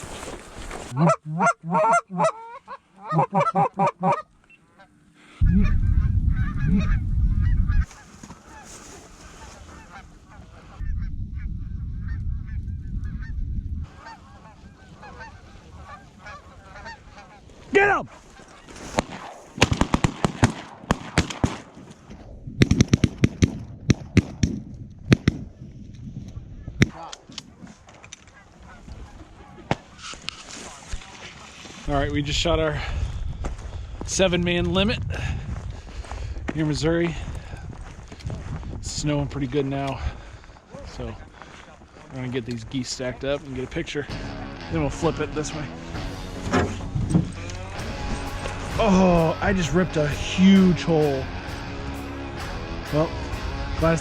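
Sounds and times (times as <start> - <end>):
geese honking: 0.0 - 19.4, 28.3 - 31.7, 43.4 - 54.0
shotgun shots: 18.9 - 22.0
loud low rushing noise: 44.1 - 54.0.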